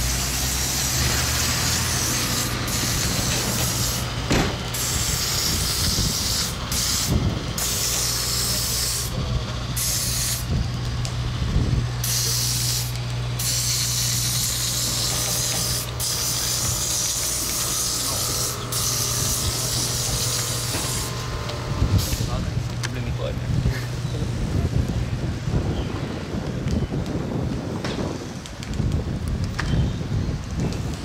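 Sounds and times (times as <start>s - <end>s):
loud hissing: 0.0s - 10.7s, 11.6s - 24.5s
low mechanical hum: 0.0s - 31.0s.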